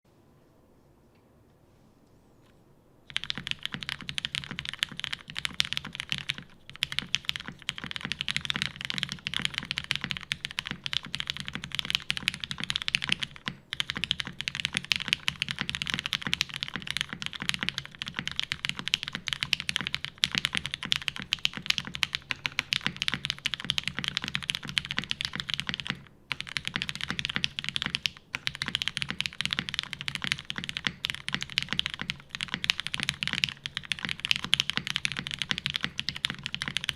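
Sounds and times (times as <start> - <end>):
fast typing on mechanical keyboard: 3.1 - 36.9.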